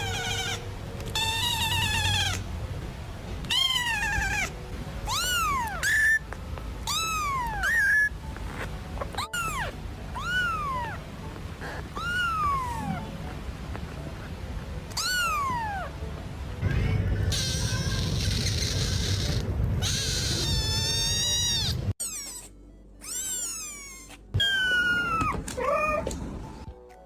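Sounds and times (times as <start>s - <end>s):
kitten meowing: 0.0s - 2.4s, 3.4s - 8.2s, 9.0s - 11.0s, 11.6s - 13.1s, 14.9s - 16.0s, 17.3s - 26.1s.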